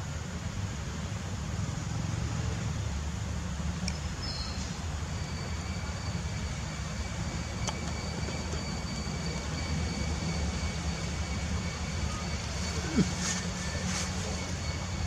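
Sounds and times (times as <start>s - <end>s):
thin steady high tone: 5.1s - 15.0s
hiss: 8.8s - 15.0s.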